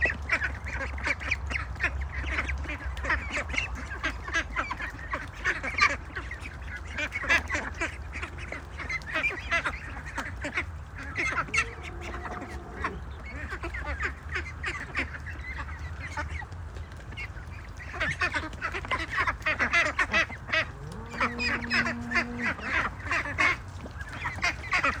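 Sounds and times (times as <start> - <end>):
ducks quacking: 0.0 - 25.0
long steady duck call: 11.2 - 13.6, 19.6 - 23.6.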